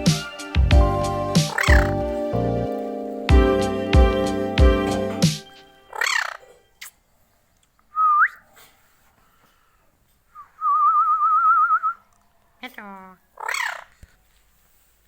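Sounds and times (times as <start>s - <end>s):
parakeet calling and whistling: 1.1s - 3.2s, 5.4s - 6.9s, 13.4s - 14.0s.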